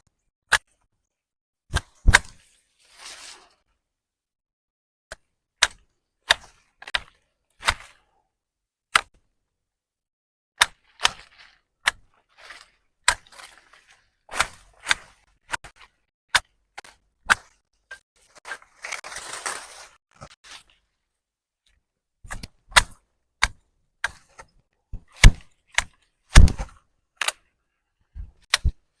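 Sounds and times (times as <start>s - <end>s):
hand tool chopping grass: 5.6s - 8.0s, 10.6s - 20.4s, 22.3s - 26.8s
grass rustling: 10.8s - 16.0s, 18.2s - 20.7s.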